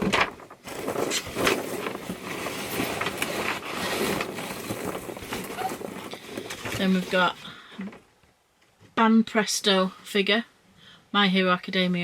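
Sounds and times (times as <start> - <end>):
packaging rustling and crinkling: 0.0 - 7.4.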